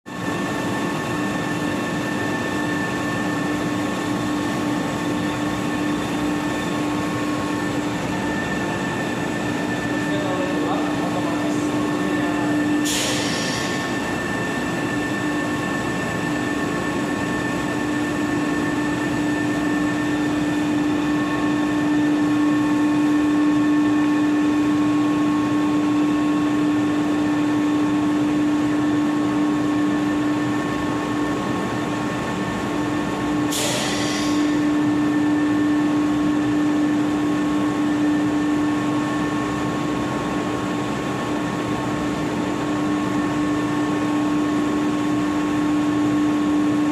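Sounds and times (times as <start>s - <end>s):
floor-cleaning machine motor hum: 4.8s - 24.6s.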